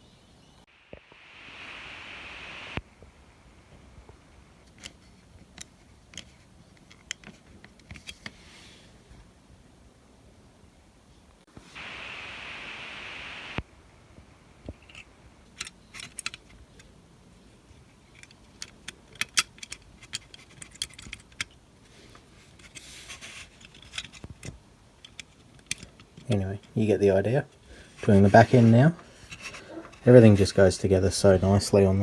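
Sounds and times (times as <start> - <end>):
steady hiss: 0.6 - 19.1, 21.5 - 32.0
plastic parts clicking together: 4.7 - 8.4, 14.7 - 17.0, 18.0 - 26.8.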